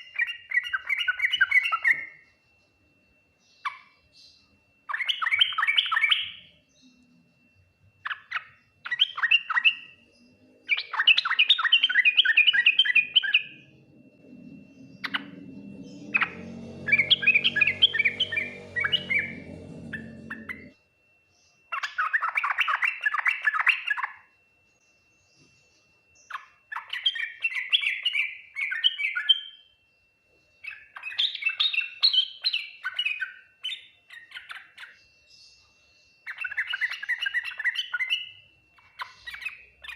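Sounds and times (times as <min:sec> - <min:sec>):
bird chattering song: 0:08.0 - 0:20.7, 0:30.6 - 0:35.1, 0:36.2 - 0:39.9
low droning hum: 0:12.5 - 0:20.8.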